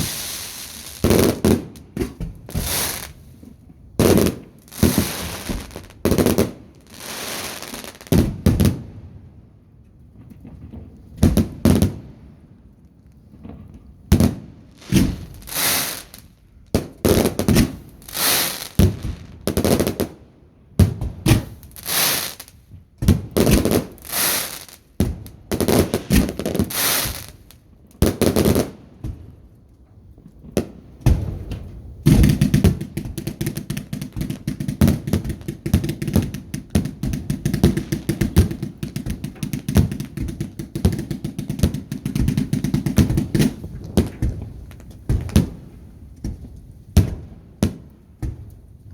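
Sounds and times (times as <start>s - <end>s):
rapid firework crackling: 0.0s - 3.2s, 4.0s - 8.3s, 14.8s - 20.2s, 21.3s - 22.6s, 23.3s - 27.5s, 32.1s - 45.6s
firework bangs with hissing tails: 0.0s - 9.2s, 10.2s - 12.3s, 13.3s - 29.5s, 30.2s - 48.9s.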